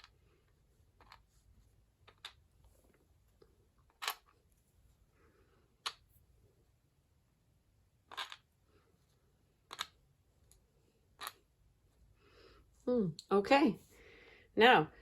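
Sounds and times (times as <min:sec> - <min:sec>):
plastic bricks clicking: 0:08.1 - 0:08.5, 0:09.7 - 0:10.0.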